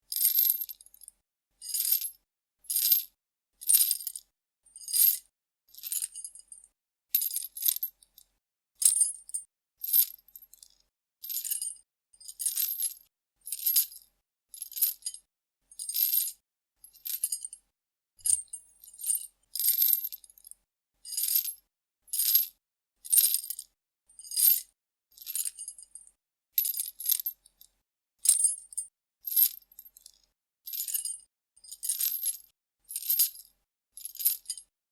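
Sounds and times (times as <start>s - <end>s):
metal chain rattling: 18.2s - 18.6s.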